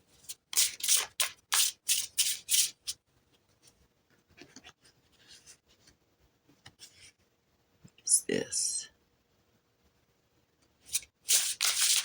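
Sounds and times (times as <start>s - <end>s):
faint rustles of card handling: 3.3s - 7.2s
cards being shuffled: 10.9s - 12.0s.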